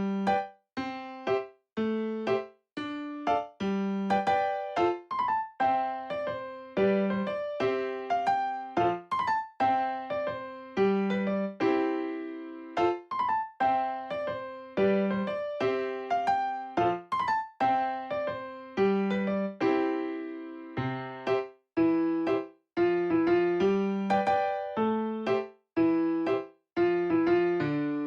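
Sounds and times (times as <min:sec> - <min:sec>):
gentle electric piano melody: 0:00.0 - 0:28.0.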